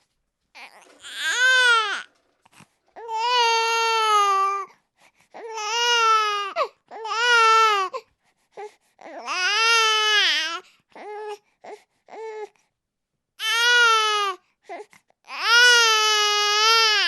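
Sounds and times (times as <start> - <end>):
infant crying: 0.6 - 2.1, 3.0 - 4.7, 5.4 - 8.0, 8.6 - 12.6, 13.4 - 17.0.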